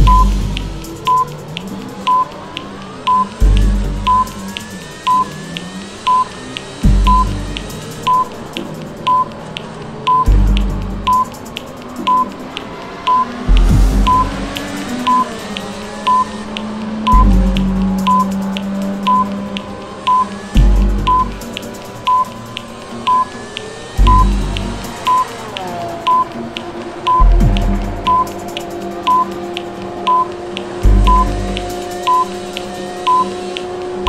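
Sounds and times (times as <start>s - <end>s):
electronic music with heavy bass: 0.0s - 1.7s, 3.2s - 5.4s, 6.8s - 8.8s, 10.1s - 12.4s, 13.2s - 16.4s, 17.1s - 19.6s, 20.3s - 22.7s, 24.0s - 26.0s, 27.2s - 29.7s, 30.6s - 32.4s
countdown timer beeping: 0.0s - 34.0s.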